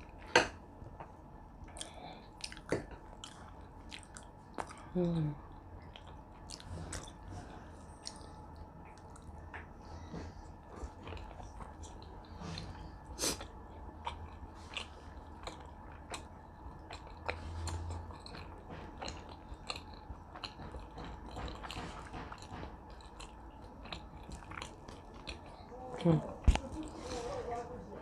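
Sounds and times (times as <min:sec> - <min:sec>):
person chewing with wet clicks: 0:00.9 - 0:27.0
food crunch: 0:13.3 - 0:26.9.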